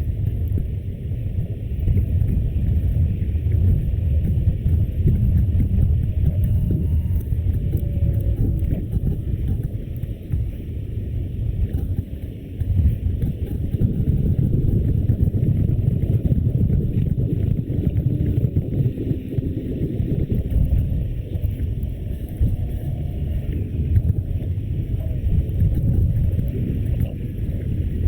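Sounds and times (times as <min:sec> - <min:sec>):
wind buffeting microphone: 0:00.0 - 0:28.0.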